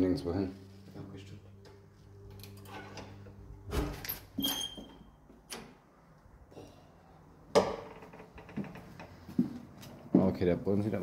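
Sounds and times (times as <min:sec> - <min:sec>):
door squeak: 0:02.6 - 0:05.2.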